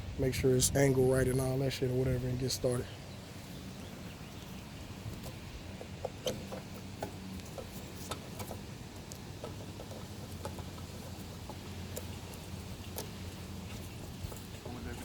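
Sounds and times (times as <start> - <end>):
handling clicks and taps: 5.1 - 14.8.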